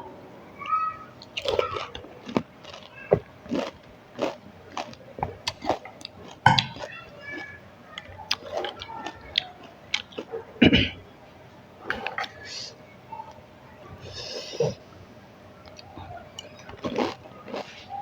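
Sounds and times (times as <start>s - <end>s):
crisp shells crunching: 1.2s - 7.4s
wet chewing: 1.2s - 10.7s, 15.6s - 18.0s.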